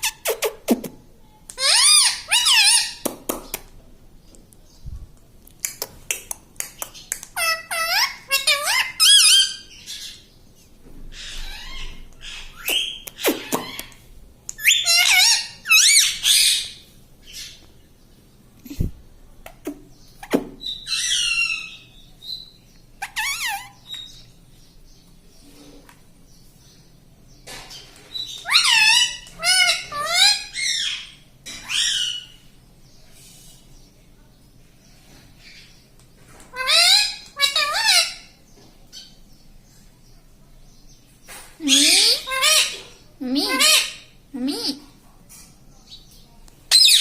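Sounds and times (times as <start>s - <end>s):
parrot squawking: 1.6s - 3.0s, 7.4s - 9.7s, 14.6s - 16.8s, 23.0s - 23.8s, 28.4s - 32.4s, 36.5s - 38.4s, 41.7s - 44.8s, 46.7s - 47.0s.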